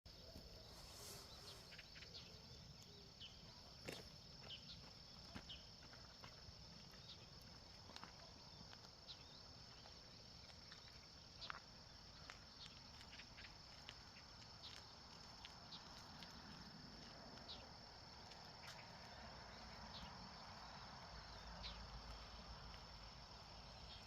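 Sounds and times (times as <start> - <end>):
bird chirps: 0.1 - 5.7
insect trill: 0.1 - 24.0.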